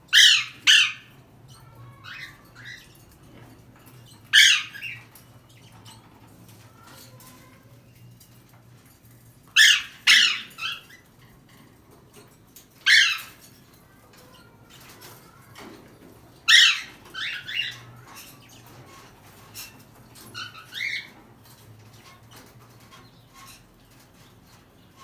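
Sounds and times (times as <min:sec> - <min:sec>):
parrot squawking: 0:00.1 - 0:01.2, 0:04.3 - 0:05.0, 0:09.6 - 0:10.9, 0:12.8 - 0:13.4, 0:16.5 - 0:17.8.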